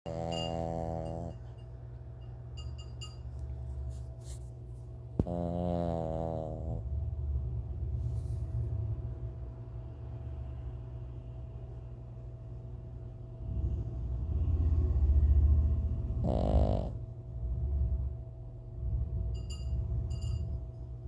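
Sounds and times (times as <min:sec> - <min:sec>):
deep rumbling snoring: 0:00.1 - 0:01.5, 0:05.2 - 0:08.4, 0:13.5 - 0:18.0
person snoring: 0:05.2 - 0:06.8.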